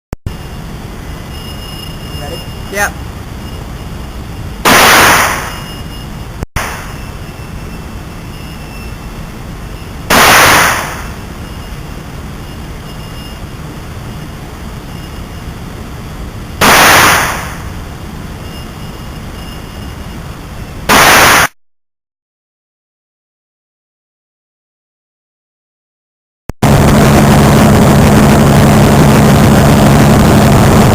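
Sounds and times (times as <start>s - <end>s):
steady background noise: 0.3s - 21.5s, 26.6s - 30.9s
gunshots: 4.6s - 5.8s, 10.1s - 11.2s, 16.6s - 17.7s, 20.9s - 21.6s.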